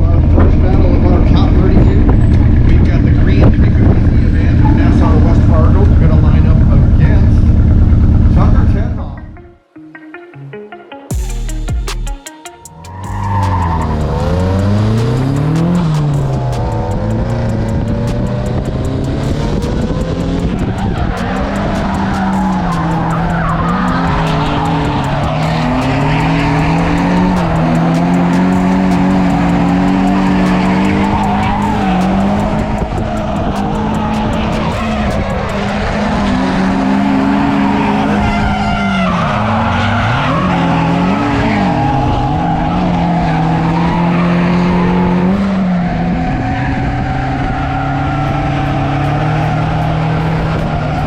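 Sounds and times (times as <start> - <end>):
tires skidding and squealing: 12.7 - 51.0
car engine revving hard: 13.0 - 51.0.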